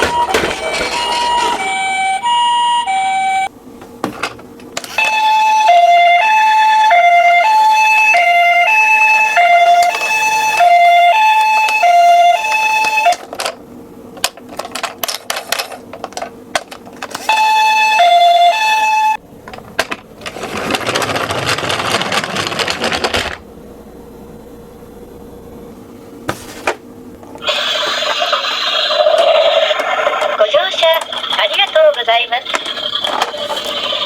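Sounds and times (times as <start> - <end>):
toy cars clicking and clacking: 0.0 - 1.8, 14.2 - 17.2, 19.5 - 23.4, 27.5 - 34.0
rattling noise: 0.0 - 1.9, 19.4 - 23.4, 27.5 - 34.0
toy ambulance two-tone siren: 0.0 - 3.5, 4.9 - 13.3, 17.2 - 19.2.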